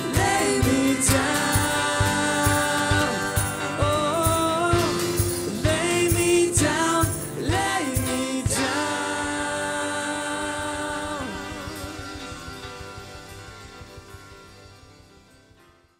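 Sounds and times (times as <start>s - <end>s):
person singing: 0.0s - 13.2s
band holding a chord: 0.0s - 15.6s.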